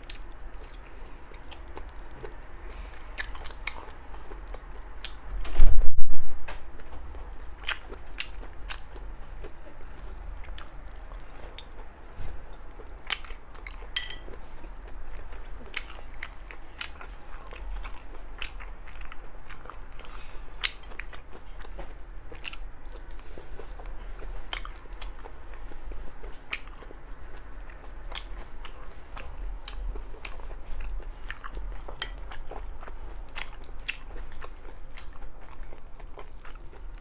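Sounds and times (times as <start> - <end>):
chewing and crunching seafood: 0.0 - 5.4, 6.7 - 37.0
ringing clink: 14.0 - 14.3.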